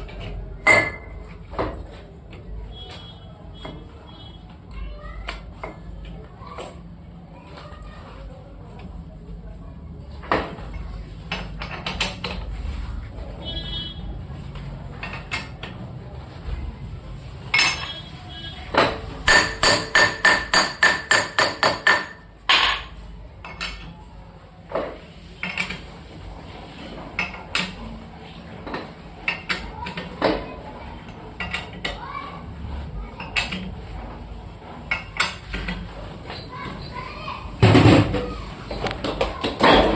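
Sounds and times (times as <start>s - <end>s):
hammer striking metal: 18.8s - 22.9s.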